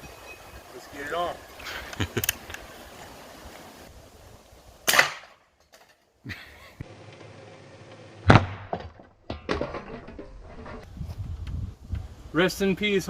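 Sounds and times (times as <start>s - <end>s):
air rifle firing: 4.9s - 5.3s.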